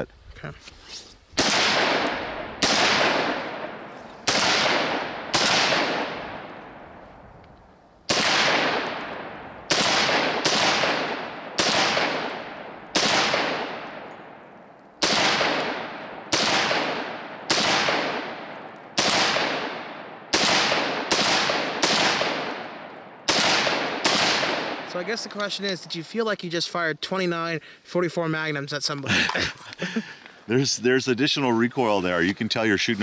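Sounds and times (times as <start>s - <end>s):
pistol gunshots with echo: 1.4s - 7.0s, 8.1s - 25.5s.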